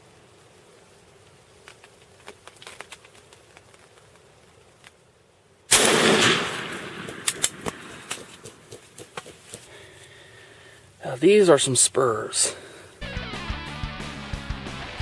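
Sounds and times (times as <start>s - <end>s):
faint ticks: 0.0s - 5.1s, 7.2s - 11.0s
shotgun shot with echo: 5.7s - 8.3s.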